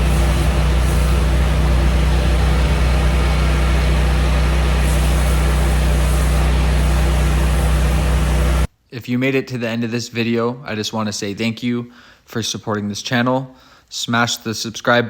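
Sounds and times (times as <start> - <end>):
pressure washer engine hum: 0.0 - 8.7
water spray hissing: 0.0 - 8.7.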